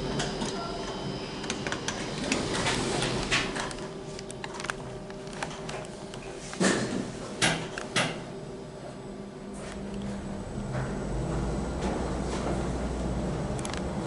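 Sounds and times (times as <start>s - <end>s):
lift doors sliding: 0.0s - 4.0s
steady low hum: 0.0s - 14.0s.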